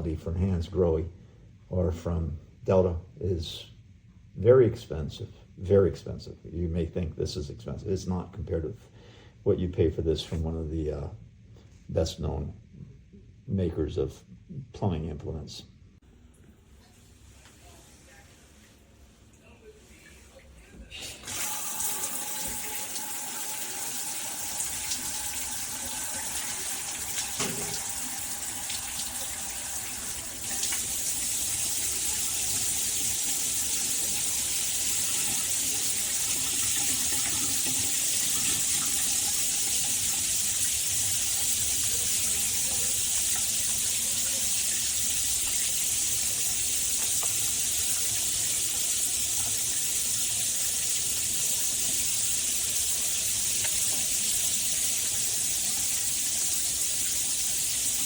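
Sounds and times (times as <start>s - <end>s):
shower water splashing: 16.3s - 58.0s.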